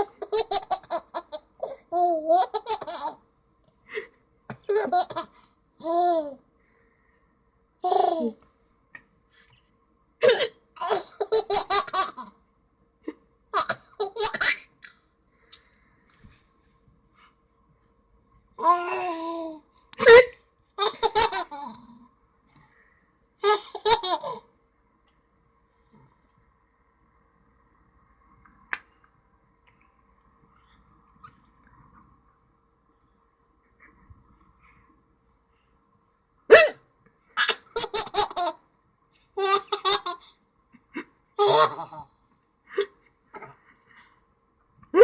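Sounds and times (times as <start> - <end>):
person hiccuping: 10.2 - 10.6, 36.5 - 36.8.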